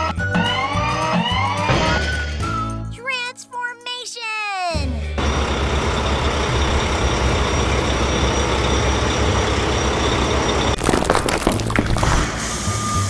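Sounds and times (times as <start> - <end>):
heavy truck engine rumbling: 0.0 - 2.9, 4.8 - 10.8.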